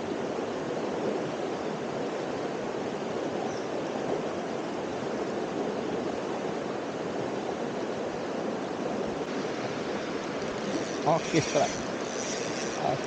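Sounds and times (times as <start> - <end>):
fast stream water: 0.0 - 13.0
waterfall rushing: 9.2 - 13.0.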